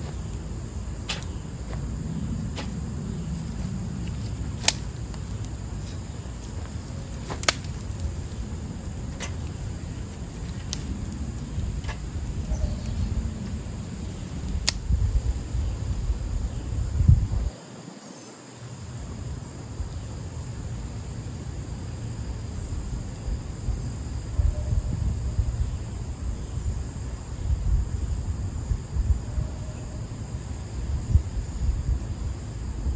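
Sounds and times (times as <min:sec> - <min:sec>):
sharp pops: 0:00.0 - 0:01.9, 0:02.5 - 0:11.2
steady low rumble: 0:00.0 - 0:17.5, 0:18.8 - 0:32.9
small fire crackling: 0:00.0 - 0:29.3
faint high insect drone: 0:00.0 - 0:32.9.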